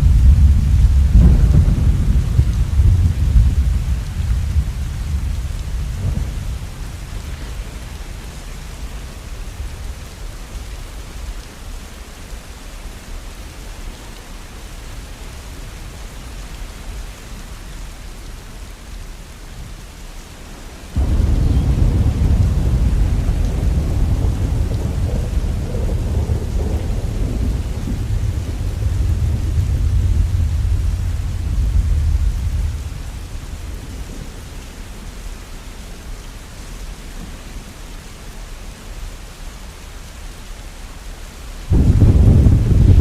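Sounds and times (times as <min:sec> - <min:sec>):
loud rumble of thunder: 0:00.0 - 0:07.6, 0:21.0 - 0:34.4, 0:41.7 - 0:43.0
steady rain falling: 0:00.0 - 0:43.0.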